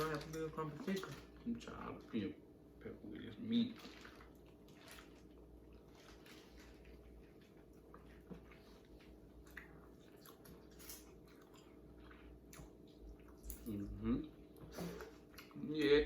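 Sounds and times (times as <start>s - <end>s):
chewing and wet mouth sounds: 3.7s - 16.0s.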